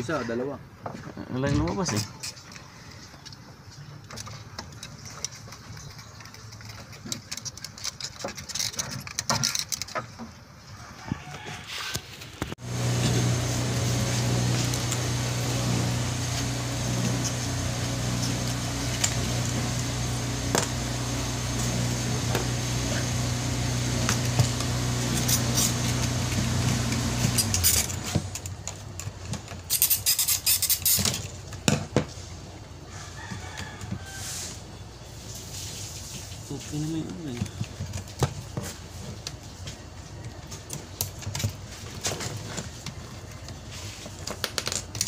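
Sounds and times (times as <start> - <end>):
electric fuel pump humming: 12.6 - 28.6.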